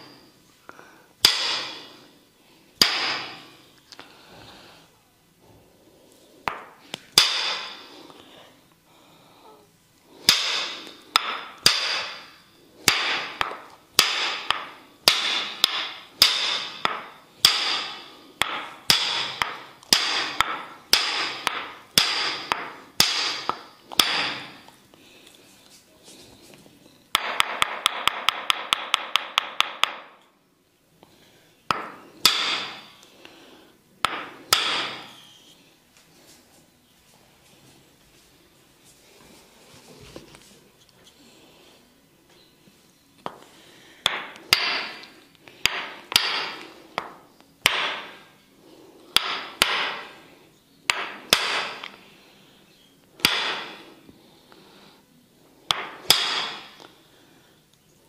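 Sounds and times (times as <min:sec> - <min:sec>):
wooden mallet striking wooden wedge: 0:12.9 - 0:24.5, 0:31.7 - 0:32.8, 0:34.0 - 0:35.1, 0:44.0 - 0:48.2, 0:49.2 - 0:50.1, 0:50.9 - 0:52.0, 0:53.2 - 0:53.8, 0:55.7 - 0:56.8.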